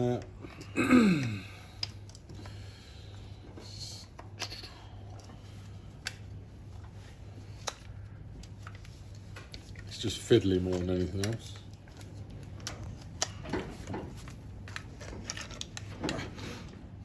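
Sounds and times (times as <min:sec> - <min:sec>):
steady low hum: 0:00.0 - 0:17.0
light metal clicks and taps: 0:10.7 - 0:11.7.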